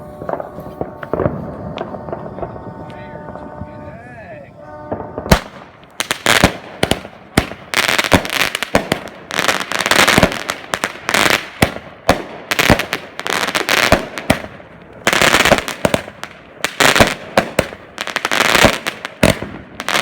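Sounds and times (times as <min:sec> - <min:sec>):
firework thumps and reports: 0:00.0 - 0:09.3
firework crackle: 0:00.0 - 0:20.0.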